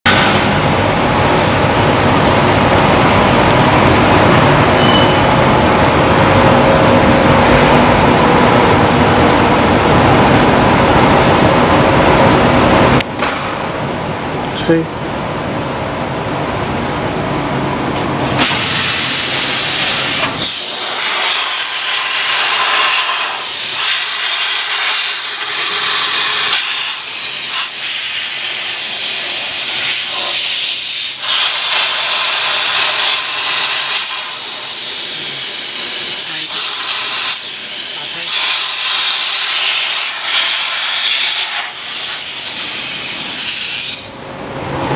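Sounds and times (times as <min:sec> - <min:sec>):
loud steady hiss: 0:18.4 - 0:44.2.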